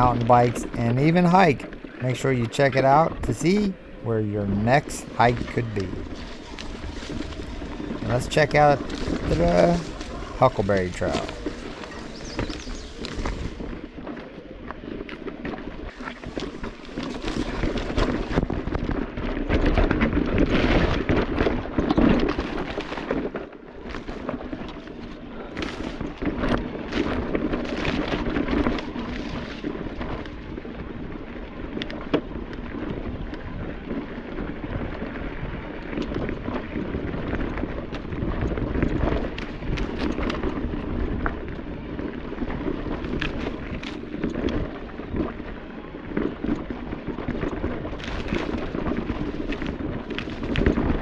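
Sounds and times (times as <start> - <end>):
continuous rushing noise: 0.0 - 22.8
tyres rumbling over rocks: 0.0 - 51.0
bike rattling and knocking: 19.8 - 51.0.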